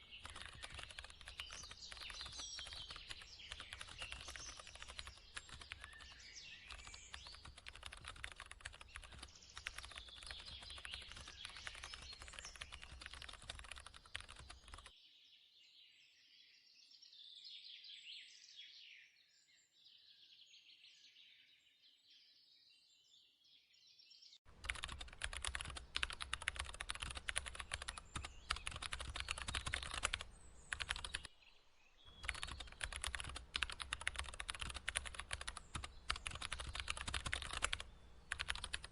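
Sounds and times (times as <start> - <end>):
birds chirping: 0.0 - 14.9, 24.5 - 38.9
computer keyboard typing: 0.0 - 14.9, 24.5 - 31.3, 32.2 - 38.9.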